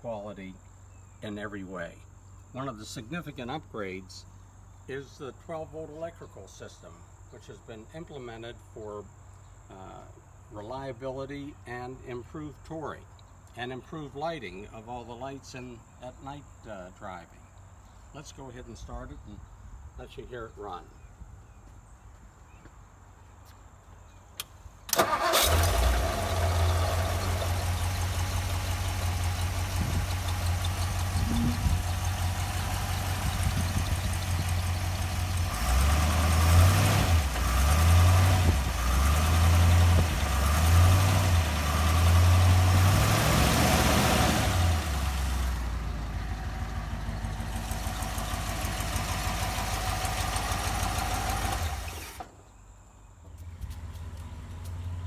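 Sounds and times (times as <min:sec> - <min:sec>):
car engine starting and revving: 0:24.9 - 0:52.3.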